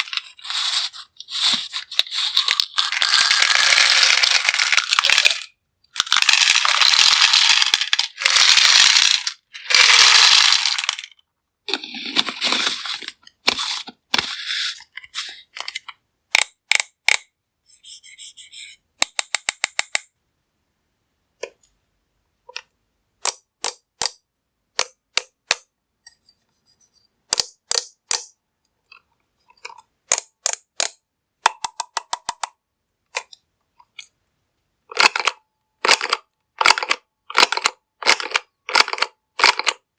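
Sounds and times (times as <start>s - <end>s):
hard candies clattering into container: 0.0s - 13.0s.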